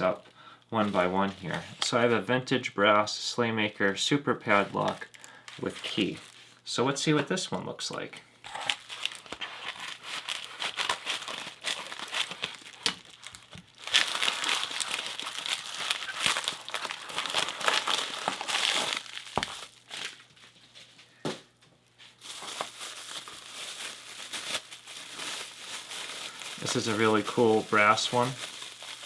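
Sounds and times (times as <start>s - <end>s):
packing material crinkling: 4.5s - 6.6s, 8.5s - 20.6s, 22.0s - 29.0s.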